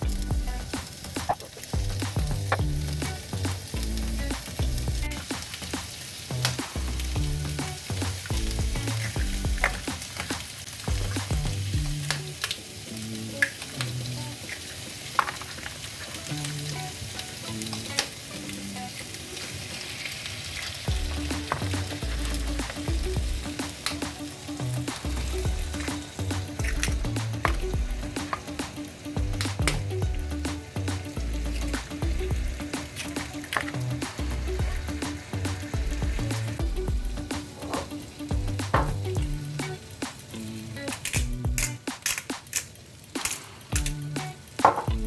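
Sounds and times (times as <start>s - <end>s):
food sizzling in oil: 0.0s - 45.0s
utensil clicking against pan: 21.1s - 36.7s, 37.3s - 45.0s.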